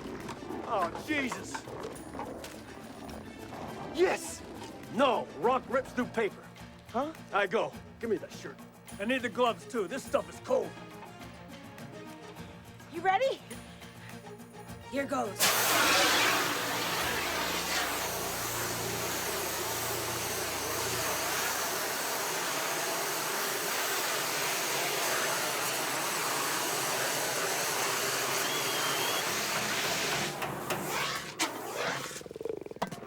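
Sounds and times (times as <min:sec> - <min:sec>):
fire extinguisher hissing: 0:15.4 - 0:32.6.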